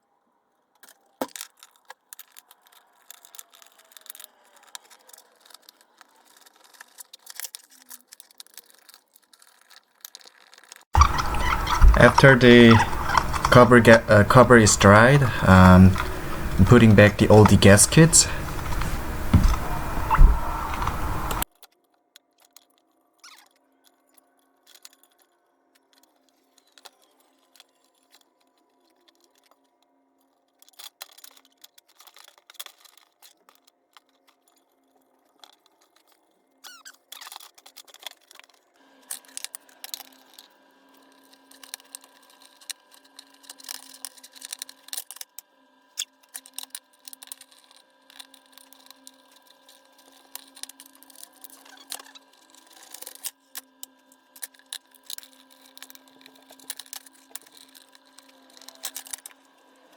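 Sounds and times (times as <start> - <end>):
small parts clicking: 0.8 - 12.0
faint steady hum: 11.0 - 21.4.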